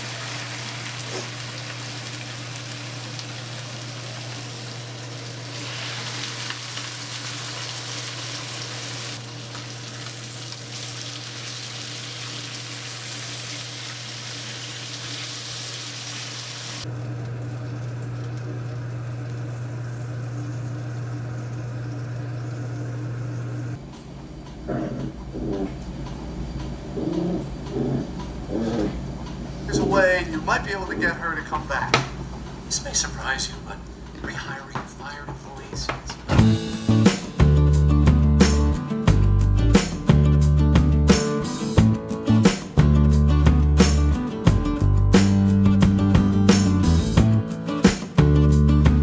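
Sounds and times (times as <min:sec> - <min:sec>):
food sizzling in a frying pan: 0:00.0 - 0:16.9.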